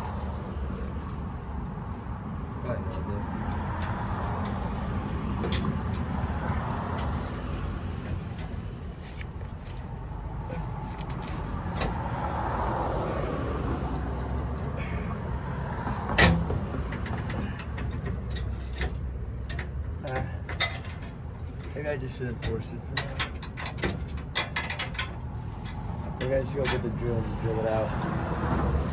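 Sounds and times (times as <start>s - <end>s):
steady low rumble: 0.0s - 20.0s.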